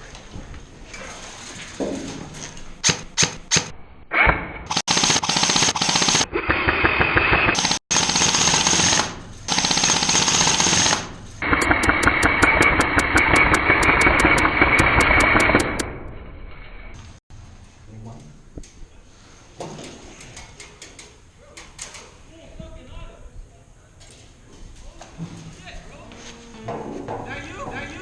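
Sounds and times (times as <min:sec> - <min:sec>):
airsoft rifle shots: 0:02.8 - 0:16.0.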